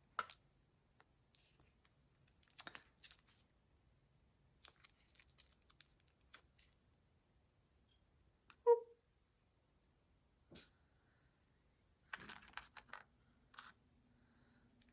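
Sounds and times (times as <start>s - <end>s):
plastic packaging clicking and crinkling: 1.4s - 3.5s, 4.6s - 6.7s.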